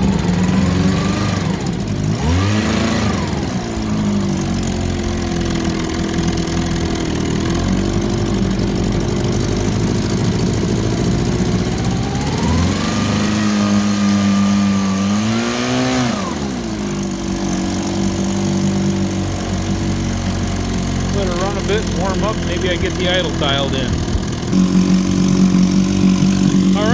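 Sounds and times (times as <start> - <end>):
outboard motor idling and revving: 0.0 - 26.9.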